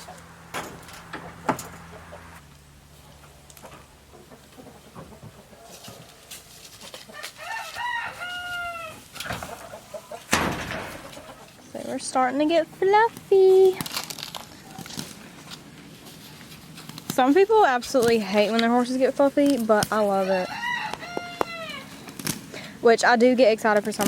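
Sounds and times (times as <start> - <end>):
rooster crowing: 7.2 - 9.0, 20.2 - 21.9.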